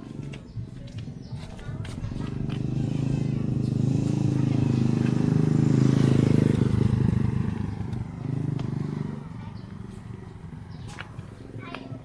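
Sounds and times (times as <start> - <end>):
vehicle engine running: 0.0 - 12.0.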